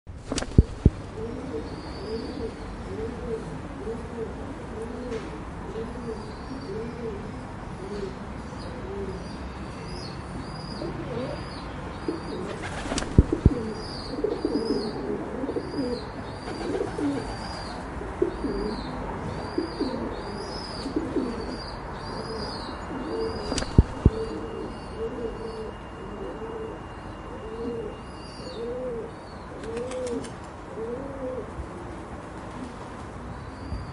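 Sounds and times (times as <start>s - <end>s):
pigeons cooing: 0.4s - 9.2s, 12.1s - 26.8s, 28.5s - 31.9s.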